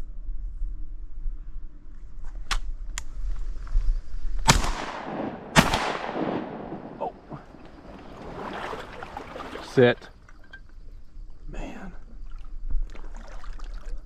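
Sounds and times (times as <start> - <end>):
shotgun blasts: 4.4 - 8.4.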